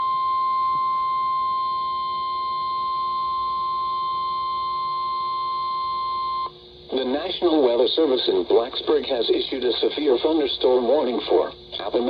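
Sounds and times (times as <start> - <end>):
steady high-pitched alarm tone: 0.0 - 8.6.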